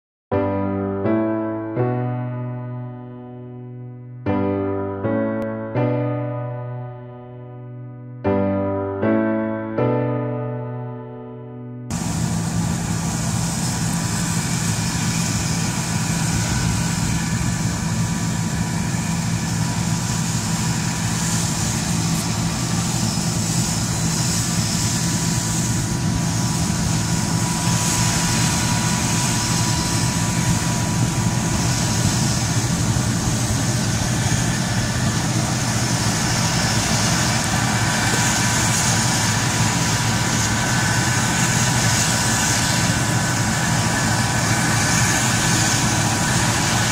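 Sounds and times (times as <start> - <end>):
diesel engine drone: 11.9 - 46.9
machinery whirring: 11.9 - 46.9.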